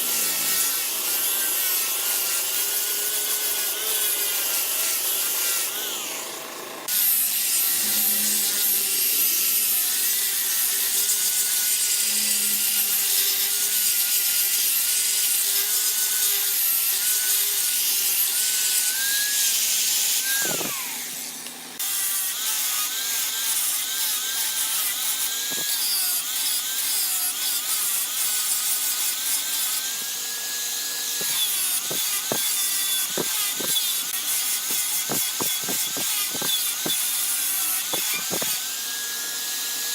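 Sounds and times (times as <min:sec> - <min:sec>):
turning tool scraping spinning wood: 0:31.2 - 0:34.0, 0:34.7 - 0:37.0.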